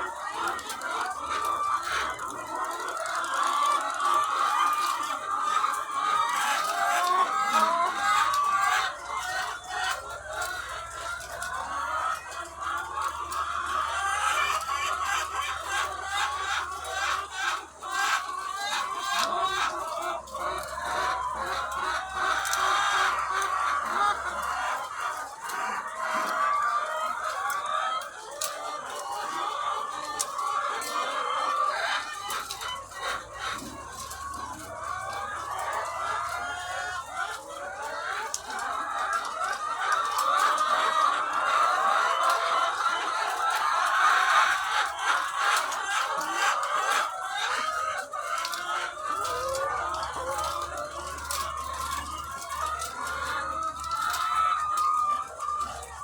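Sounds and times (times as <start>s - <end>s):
hens clucking: 0.0s - 56.0s.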